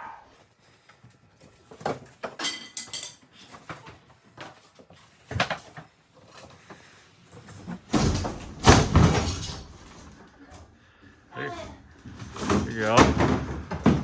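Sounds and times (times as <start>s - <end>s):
demolition knocks and metallic clatter: 7.4s - 10.3s, 11.6s - 14.0s.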